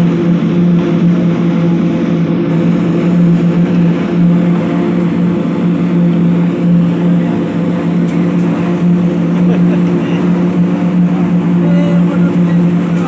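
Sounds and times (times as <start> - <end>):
engine humming steadily: 0.0 - 13.0.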